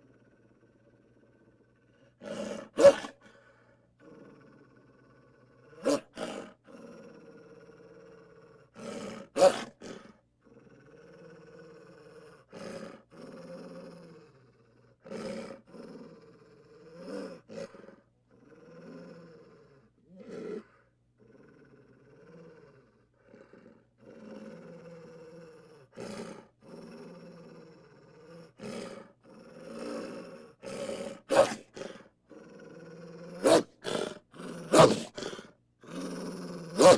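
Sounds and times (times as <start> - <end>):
animal growling and roaring: 4.0 - 36.9.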